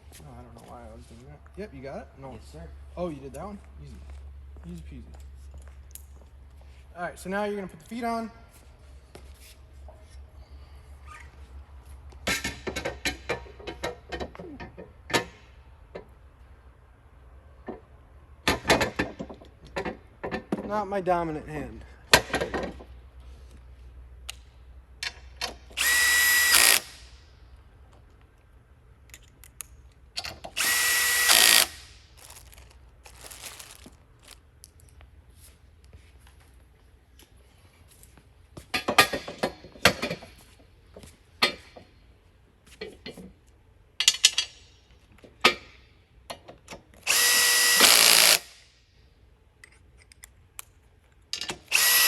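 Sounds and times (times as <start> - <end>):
power drill driving screws: 25.8 - 27.0, 30.6 - 32.0, 47.0 - 48.6, 51.6 - 52.0.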